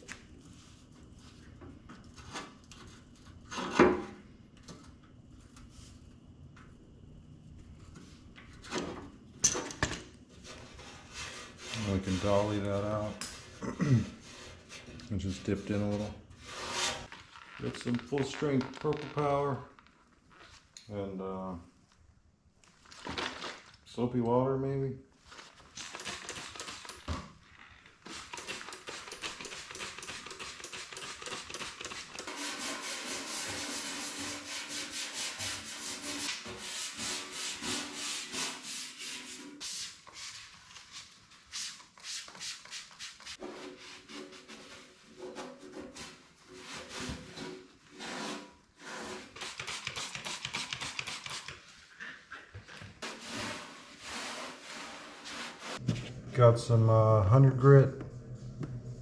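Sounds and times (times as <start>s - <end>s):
brush scrubbing metal: 10.5s - 13.0s, 28.1s - 51.6s, 53.0s - 55.8s.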